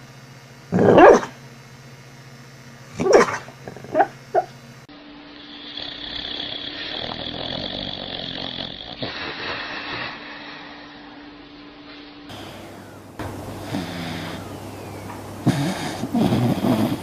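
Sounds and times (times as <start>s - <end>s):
dog barking: 0.8s - 1.4s, 3.0s - 4.5s
dog snoring: 5.4s - 10.2s, 13.6s - 14.6s, 15.4s - 17.0s.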